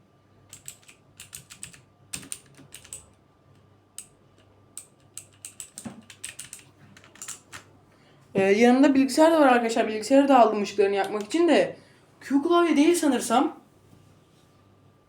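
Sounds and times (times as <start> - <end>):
mechanical keyboard clicks: 0.5 - 7.7.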